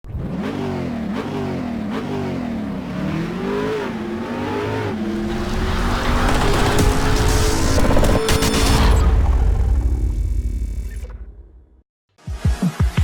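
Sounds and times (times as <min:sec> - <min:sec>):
engine revving: 0:00.0 - 0:11.1.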